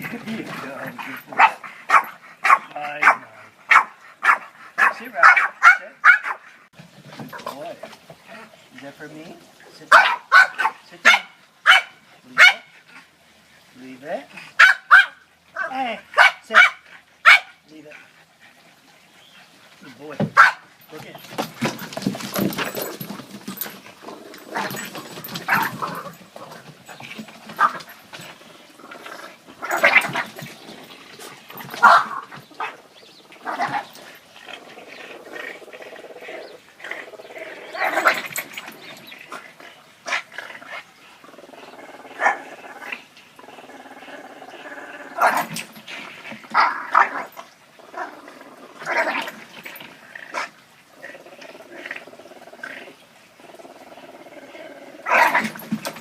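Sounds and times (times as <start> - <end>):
dogs barking: 1.2 - 6.5, 9.9 - 12.7, 14.5 - 17.6, 20.3 - 20.7, 24.5 - 26.2, 31.6 - 32.8, 42.1 - 42.6, 55.0 - 56.0
dogs growling: 21.3 - 56.0.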